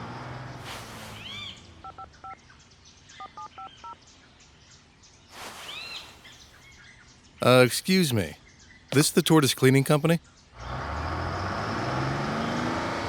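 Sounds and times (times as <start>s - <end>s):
hiss: 0.6s - 1.4s, 5.4s - 6.4s
birds chirping: 5.2s - 8.4s.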